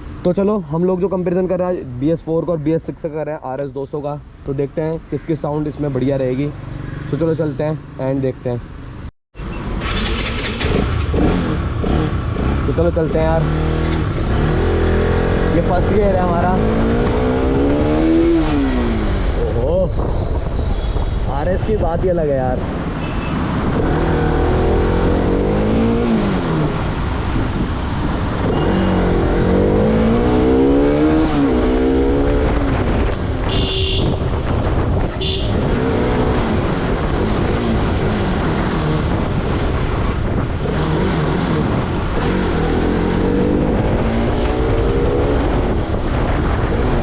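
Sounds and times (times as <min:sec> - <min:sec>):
motorcycle engine revving: 0:09.8 - 0:19.6, 0:23.0 - 0:47.0.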